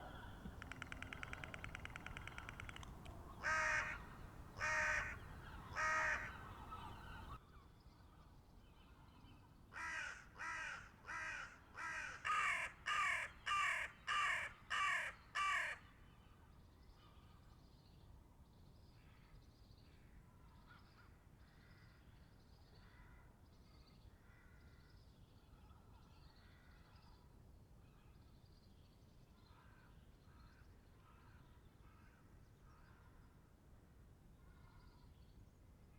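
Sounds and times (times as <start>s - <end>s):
rapid rattling call: 0.0s - 7.2s
crow cawing: 0.0s - 7.3s, 9.8s - 15.8s.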